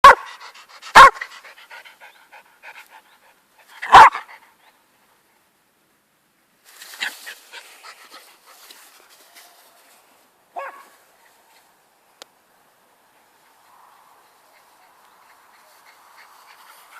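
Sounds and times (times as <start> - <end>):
dog barking: 0.0 - 0.3, 1.0 - 1.3, 3.8 - 4.3, 10.6 - 10.9
dog panting: 0.2 - 3.8, 14.4 - 16.9.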